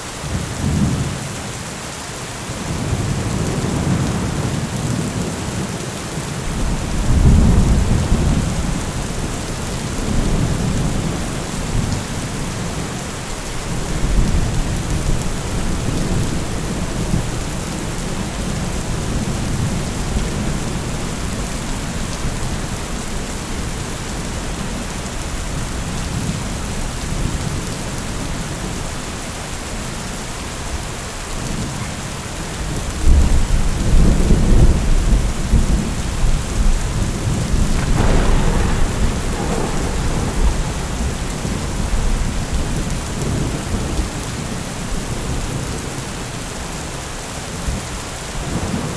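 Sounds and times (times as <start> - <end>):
heavy rain hissing: 0.1 - 48.9
low rolling thunder: 6.4 - 29.0, 33.0 - 46.0.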